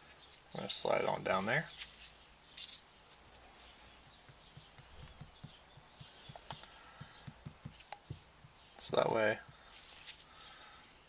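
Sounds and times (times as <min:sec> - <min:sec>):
soft handling taps: 0:04.2 - 0:09.6.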